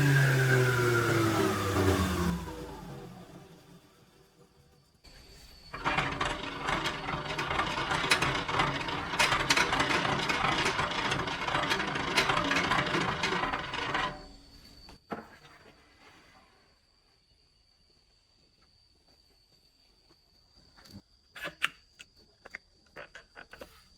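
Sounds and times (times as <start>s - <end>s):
circular saw cutting wood: 0.0s - 4.1s, 5.2s - 14.9s.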